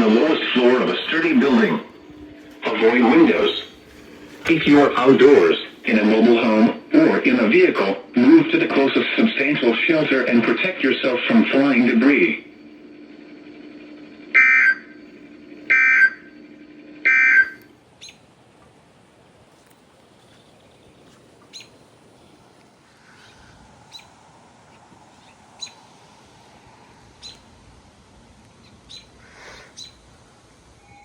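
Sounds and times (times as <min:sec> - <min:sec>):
shrill digital data tones: 0:00.0 - 0:12.6, 0:13.6 - 0:16.4
faint radio hiss: 0:00.0 - 0:13.5, 0:17.5 - 0:31.0
low hum: 0:00.0 - 0:31.0.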